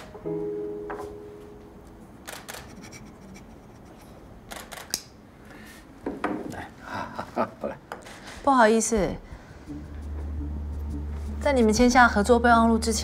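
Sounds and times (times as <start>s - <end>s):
camera shutters clicking: 2.2s - 2.8s, 4.5s - 5.1s.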